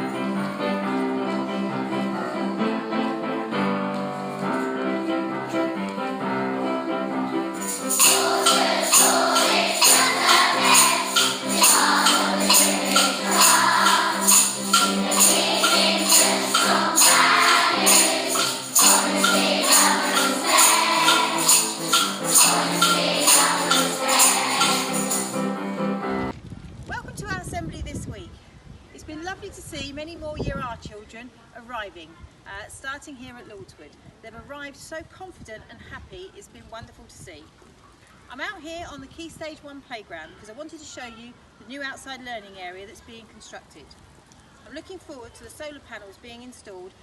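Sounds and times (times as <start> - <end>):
held keyboard chords: 0.0 - 26.3
tambourine beat: 7.5 - 25.8
voices singing: 7.6 - 25.4.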